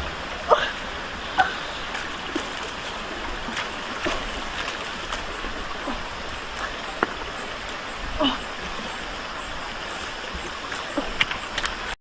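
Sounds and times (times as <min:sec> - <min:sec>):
running water: 0:00.0 - 0:12.0
small splashes and ticks: 0:01.8 - 0:07.8, 0:09.8 - 0:12.0.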